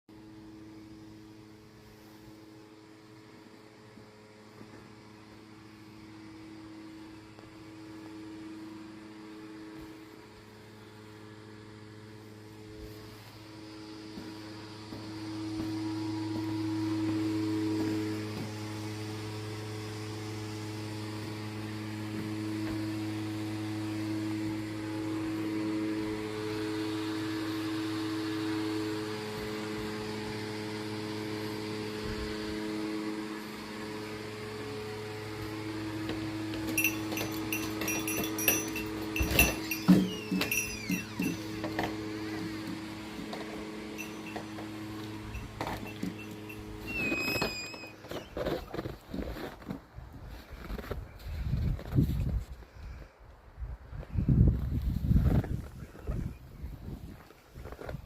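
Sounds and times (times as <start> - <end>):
low mechanical hum: 0.1 - 58.0
sharp clinking ticks: 36.6 - 41.7, 44.0 - 47.6.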